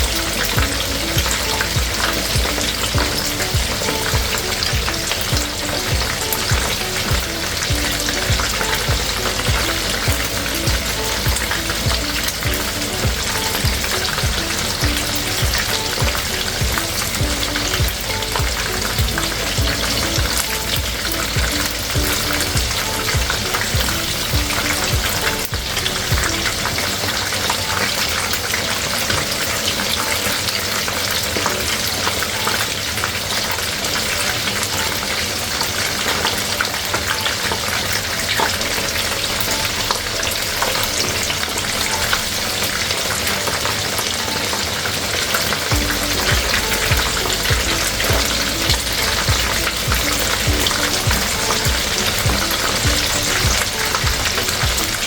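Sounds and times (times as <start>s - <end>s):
chicken wings deep-frying in oil: 0.0s - 55.0s.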